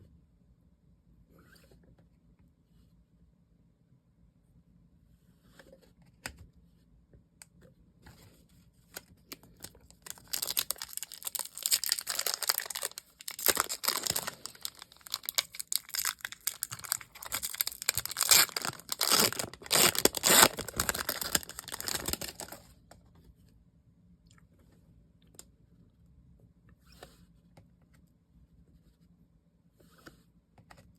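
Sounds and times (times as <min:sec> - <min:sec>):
packaging tearing and crinkling: 0:09.6 - 0:22.6.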